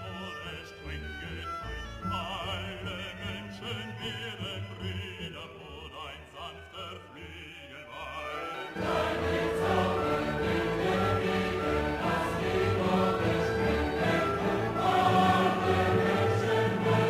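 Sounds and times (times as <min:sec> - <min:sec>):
background music with wavering melody: 0:00.0 - 0:17.0.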